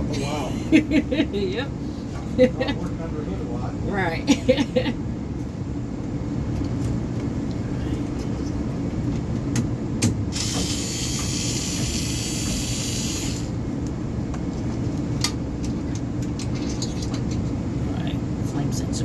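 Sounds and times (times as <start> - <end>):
low machine drone: 0.0 - 19.0
high hiss: 10.4 - 13.5.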